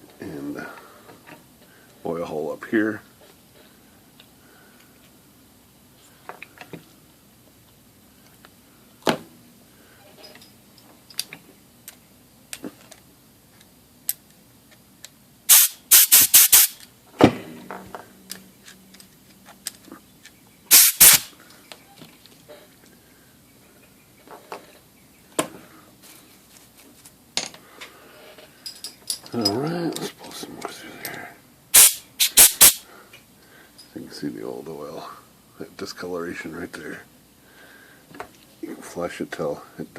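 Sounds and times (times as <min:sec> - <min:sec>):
compressed air blasts: 0:15.5 - 0:16.8, 0:20.7 - 0:21.3, 0:31.8 - 0:32.8.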